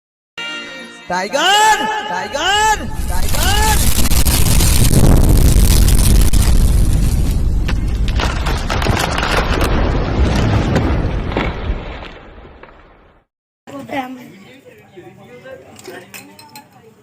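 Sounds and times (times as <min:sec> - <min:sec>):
rumbling boom with crackles: 0:02.6 - 0:13.3.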